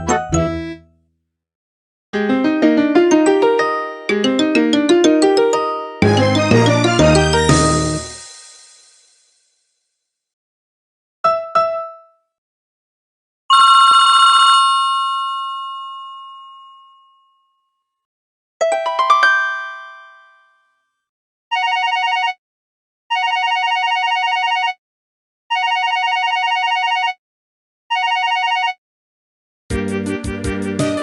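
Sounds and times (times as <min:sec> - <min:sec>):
phone chime ringtone: 0:13.5 - 0:17.5, 0:27.9 - 0:28.8.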